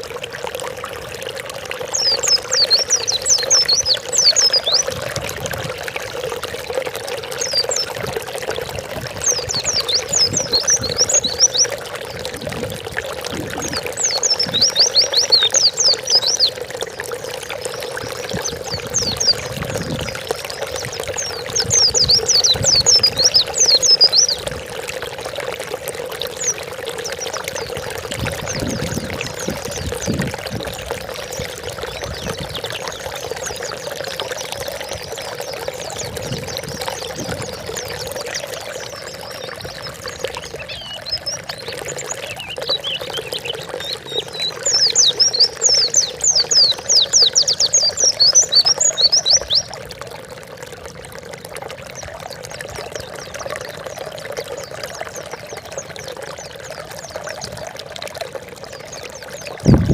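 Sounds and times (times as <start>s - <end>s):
running pouring water: 0.0s - 59.9s
bird song high chirps: 1.9s - 4.9s, 7.4s - 8.0s, 9.2s - 11.9s, 13.5s - 16.7s, 17.6s - 24.5s, 34.7s - 49.7s.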